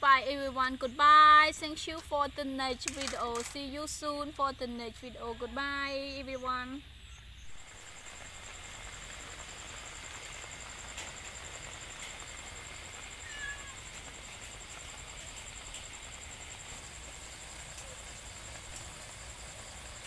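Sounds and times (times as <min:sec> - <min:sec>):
high-pitched insect trill: 0:00.0 - 0:20.0
cat meowing: 0:13.2 - 0:13.8.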